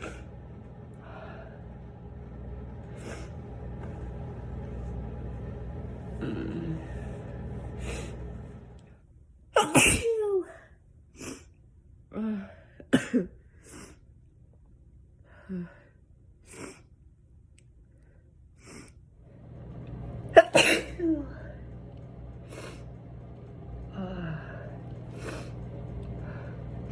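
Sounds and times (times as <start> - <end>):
steady low rumble: 0.0 - 9.0, 19.2 - 26.9
person sneezing loudly: 9.6 - 10.3.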